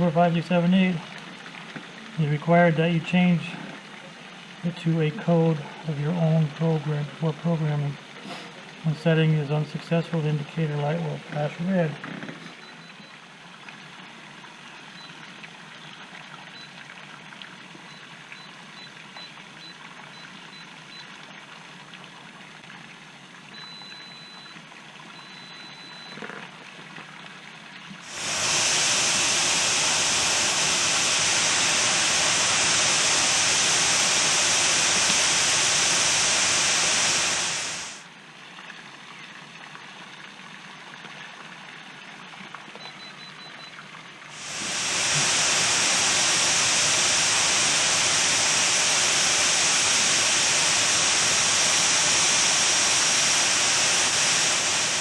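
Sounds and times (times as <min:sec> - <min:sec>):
loud steady hiss: 0:00.0 - 0:01.4, 0:02.1 - 0:12.0, 0:28.0 - 0:38.1, 0:44.3 - 0:55.0.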